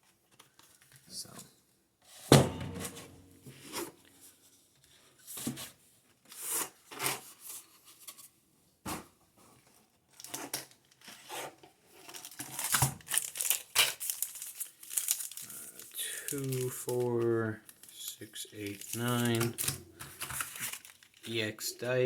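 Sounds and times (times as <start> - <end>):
packaging tearing and crinkling: 10.1 - 21.5.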